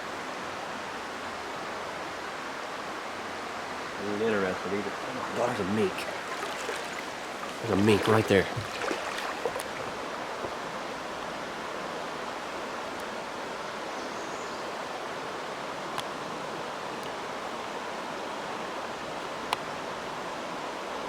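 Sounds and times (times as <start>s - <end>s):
creek water running over rocks: 0.0s - 13.9s.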